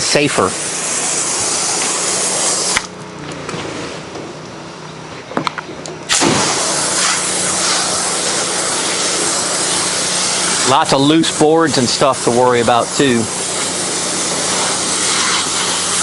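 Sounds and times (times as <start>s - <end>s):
pressure washer spray hissing: 0.0s - 2.9s, 6.1s - 16.0s.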